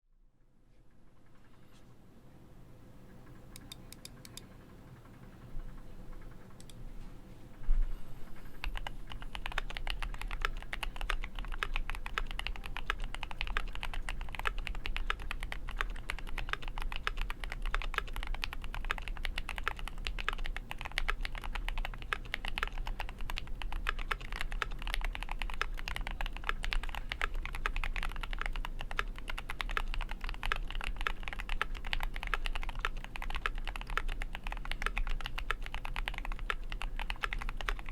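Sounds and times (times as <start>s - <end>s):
typing on a mechanical keyboard: 8.4s - 37.9s.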